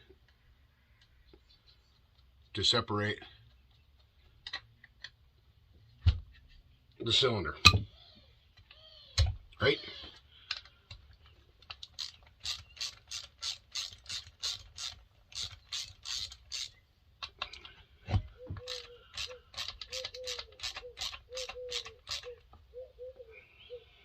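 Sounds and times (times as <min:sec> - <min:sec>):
socket ratchet clicking: 0:11.6 - 0:17.6, 0:18.6 - 0:22.4.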